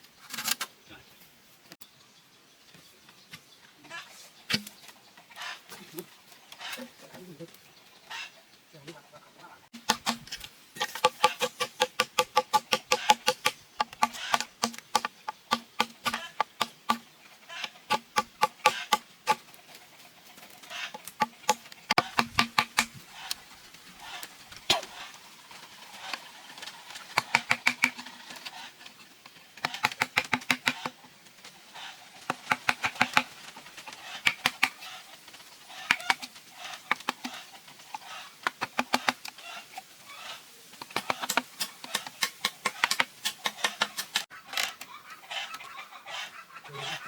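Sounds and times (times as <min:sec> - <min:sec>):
rapid sharp knocks: 0:11.0 - 0:17.0, 0:21.2 - 0:22.9.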